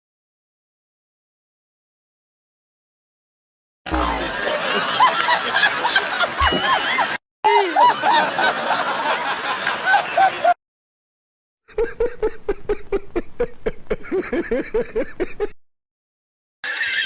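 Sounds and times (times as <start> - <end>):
snickering laugh: 3.9 - 10.6, 11.7 - 15.6.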